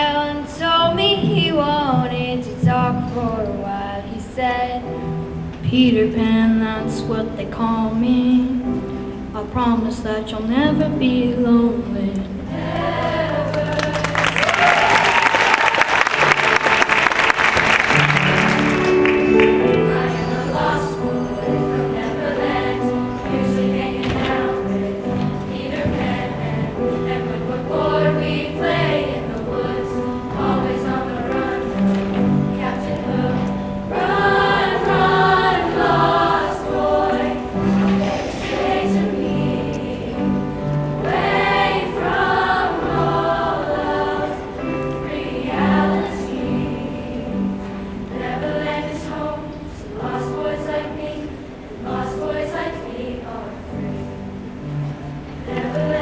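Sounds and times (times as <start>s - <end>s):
choir singing with accompaniment: 0.0s - 56.0s
applause: 13.5s - 20.0s.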